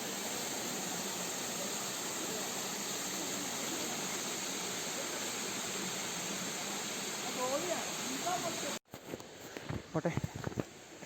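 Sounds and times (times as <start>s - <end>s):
waterfall rushing: 0.0s - 8.8s.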